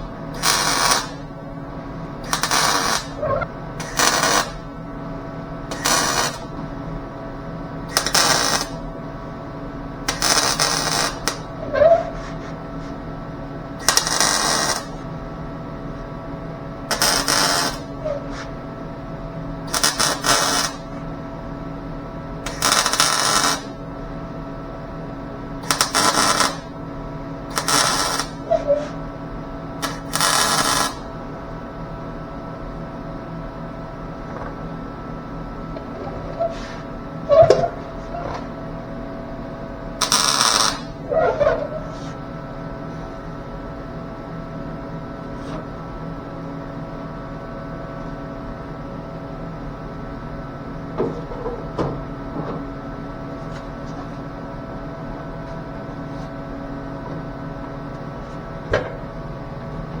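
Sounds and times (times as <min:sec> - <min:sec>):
welding machine hum: 0:00.0 - 0:47.5
crackling weld burst: 0:00.4 - 0:01.2, 0:02.3 - 0:03.2, 0:03.8 - 0:04.6, 0:05.7 - 0:06.5, 0:08.0 - 0:08.8, 0:10.1 - 0:12.0, 0:13.8 - 0:15.0, 0:19.7 - 0:20.8, 0:22.5 - 0:23.7, 0:25.6 - 0:26.7, 0:27.5 - 0:28.9, 0:29.8 - 0:31.0, 0:40.0 - 0:41.4.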